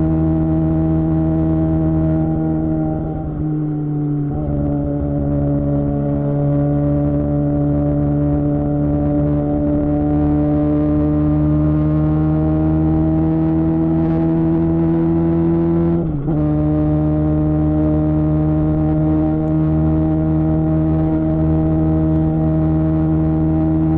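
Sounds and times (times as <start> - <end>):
motorcycle engine revving: 0.0 - 23.9.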